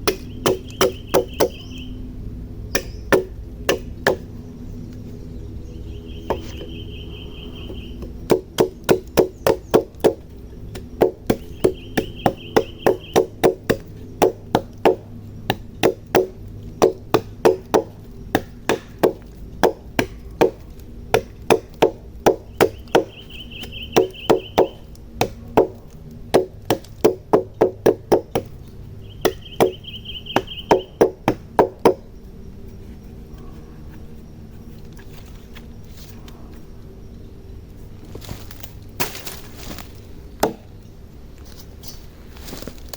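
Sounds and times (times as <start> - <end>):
hand tool striking wood: 0.0 - 1.7, 2.7 - 4.3, 6.2 - 6.7, 8.0 - 28.6, 29.2 - 32.1, 38.3 - 40.7.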